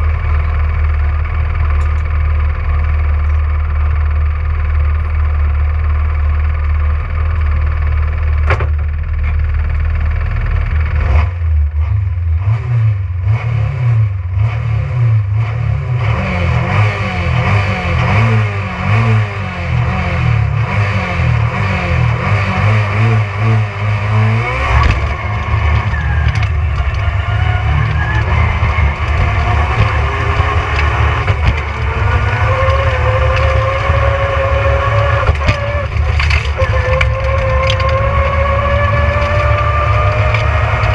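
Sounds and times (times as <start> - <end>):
rally car engine revving: 8.4 - 40.9.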